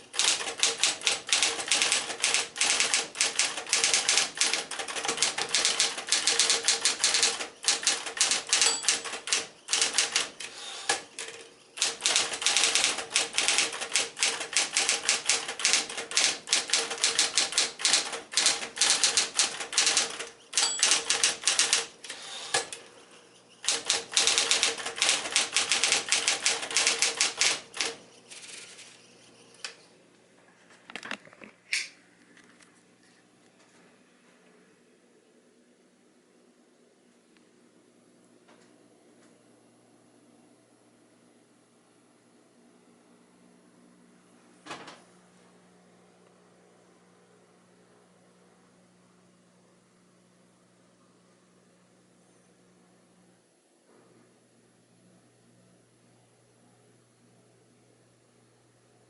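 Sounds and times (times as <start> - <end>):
electric typewriter typing: 0.0 - 22.9, 23.6 - 28.9.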